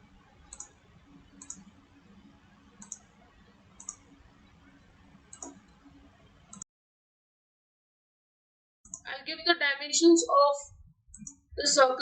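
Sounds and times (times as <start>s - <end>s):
faint mouse clicks: 0.5s - 1.8s, 2.7s - 3.2s, 3.8s - 4.2s, 5.3s - 5.9s.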